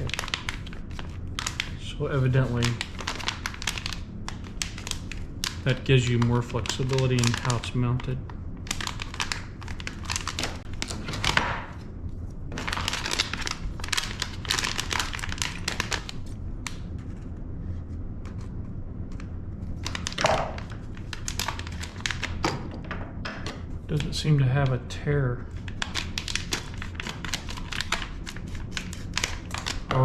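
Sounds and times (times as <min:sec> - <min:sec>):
plastic bag crinkling: 0:00.0 - 0:11.8, 0:12.5 - 0:16.9, 0:19.7 - 0:22.4, 0:25.5 - 0:30.0.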